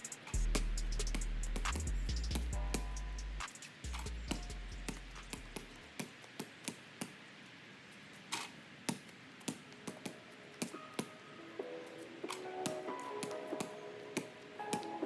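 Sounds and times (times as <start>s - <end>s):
music with deep bass: 0.4s - 5.8s.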